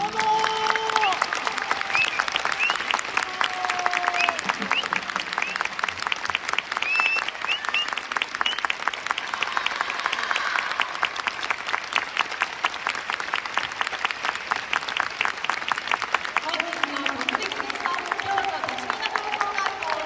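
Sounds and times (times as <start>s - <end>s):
audience clapping: 0.0s - 20.0s
high rising calls: 6.8s - 12.6s.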